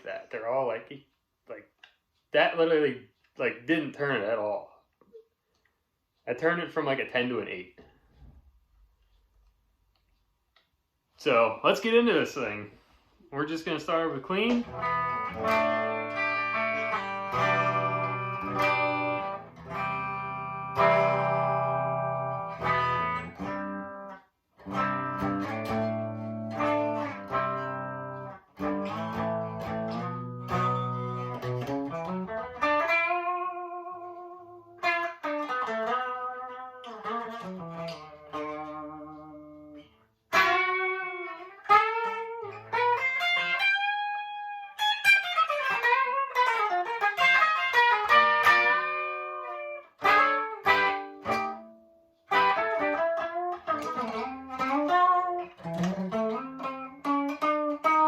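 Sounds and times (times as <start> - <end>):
electric guitar lead with bends: 13.8 - 58.0
clean electric guitar chords: 14.5 - 58.0.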